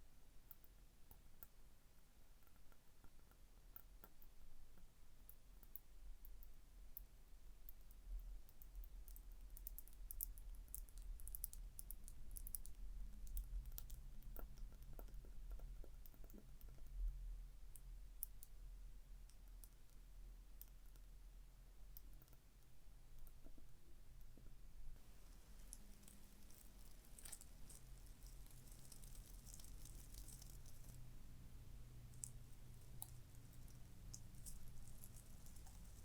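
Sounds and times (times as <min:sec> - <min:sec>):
fingers tapping and scratching: 0:25.3 - 0:31.0, 0:32.1 - 0:36.0.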